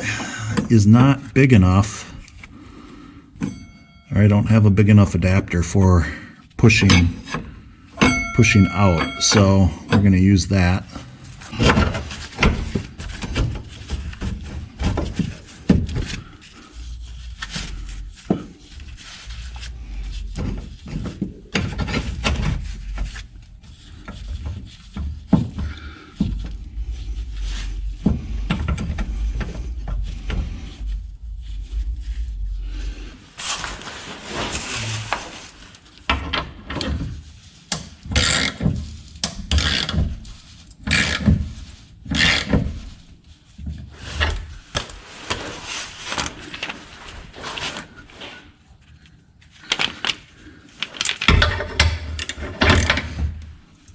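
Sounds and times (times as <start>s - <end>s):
steady low hum: 6.5s - 36.1s
hand tools knocking on metal: 8.0s - 10.4s.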